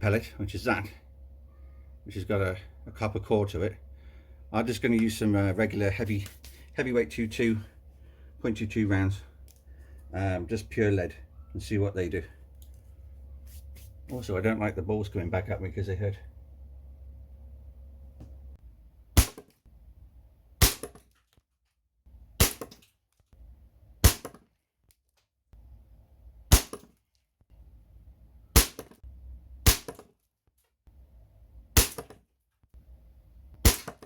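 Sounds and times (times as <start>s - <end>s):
air rifle shots: 19.2s - 19.5s, 20.6s - 21.0s, 22.4s - 22.8s, 24.0s - 24.4s, 26.5s - 26.9s, 28.6s - 29.0s, 29.6s - 30.0s, 31.8s - 32.2s, 33.6s - 34.0s
pellets hitting padlock: 19.2s - 19.6s, 20.6s - 21.4s, 22.4s - 23.0s, 24.0s - 24.5s, 26.5s - 27.0s, 28.5s - 29.0s, 29.7s - 30.2s, 31.8s - 32.3s, 33.6s - 34.0s.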